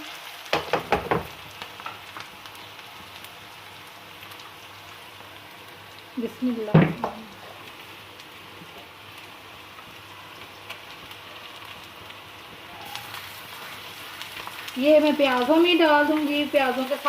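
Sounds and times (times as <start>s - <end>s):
hot oil sizzling: 0.0s - 17.0s
faint crackles: 1.5s - 17.0s.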